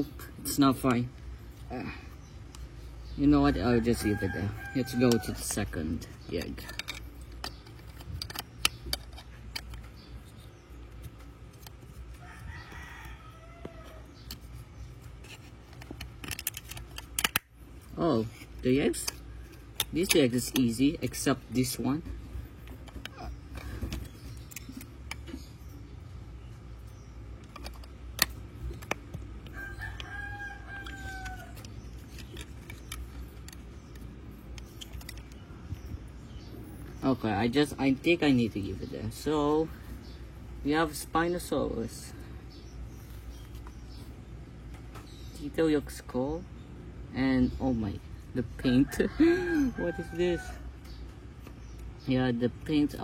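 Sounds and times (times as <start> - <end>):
distant rooster crowing: 3.5 - 5.7, 12.1 - 14.2, 29.4 - 31.8, 48.8 - 50.8.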